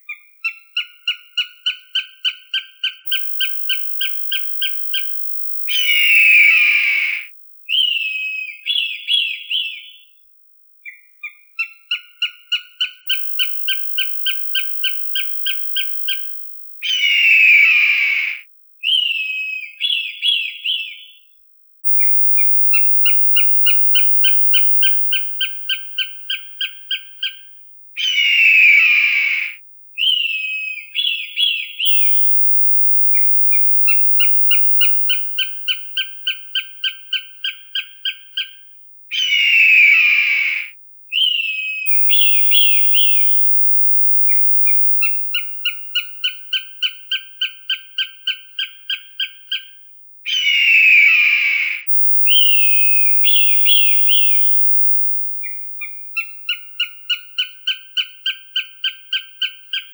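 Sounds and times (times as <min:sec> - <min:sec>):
hawk calls: 0:05.7 - 0:08.0, 0:16.8 - 0:18.4, 0:28.0 - 0:35.4, 0:39.1 - 0:46.4, 0:50.3 - 0:54.8.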